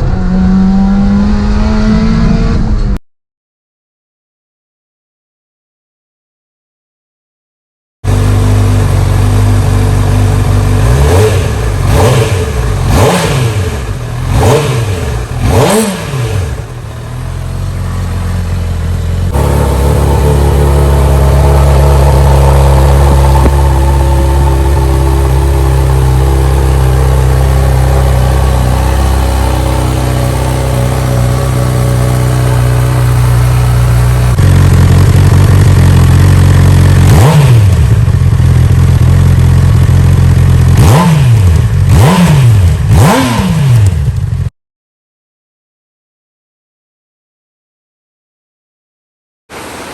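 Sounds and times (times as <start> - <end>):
motorcycle engine running: 8.0 - 44.5
motorcycle throttle blips: 8.1 - 44.5.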